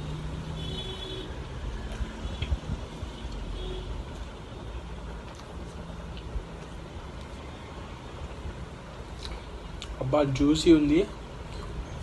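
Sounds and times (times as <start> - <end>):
person chewing: 5.1 - 7.4, 9.1 - 10.0.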